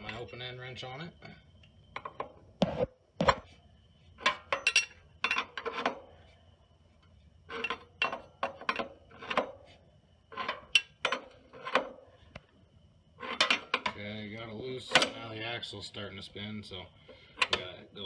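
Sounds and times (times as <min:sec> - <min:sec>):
wrench clinking on axle nut: 0:04.3 - 0:05.9.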